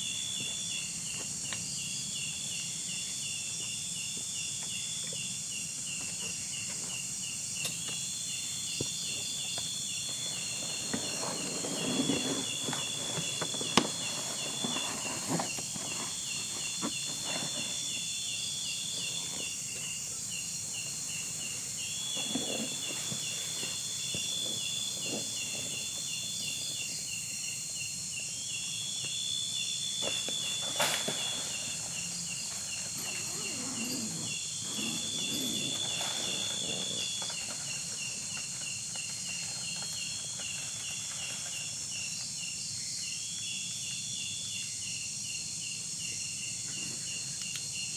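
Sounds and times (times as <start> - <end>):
insects trilling: 0.0 - 47.9
rustling and knocks: 8.8 - 18.0.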